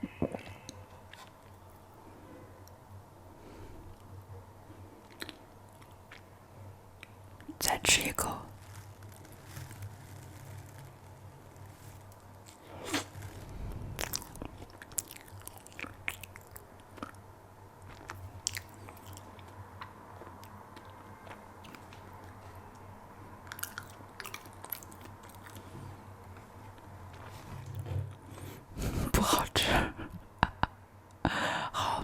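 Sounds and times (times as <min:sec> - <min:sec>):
chewing bread: 0:05.0 - 0:06.3, 0:07.0 - 0:22.6, 0:23.4 - 0:28.5
crisp crunches and clicks: 0:07.0 - 0:17.2, 0:17.8 - 0:25.7.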